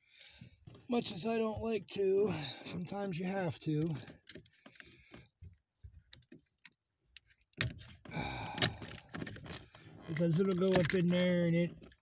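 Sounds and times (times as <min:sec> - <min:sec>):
clicking and rustling: 0:03.8 - 0:12.0
light clicks of wiring and plastic trim: 0:08.6 - 0:12.0.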